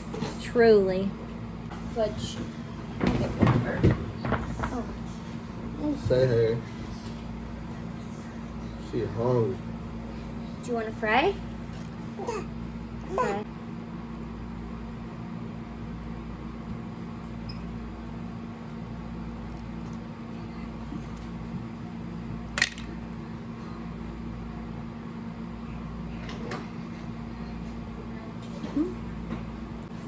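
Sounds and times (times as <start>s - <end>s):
low room hum: 0.0s - 30.0s.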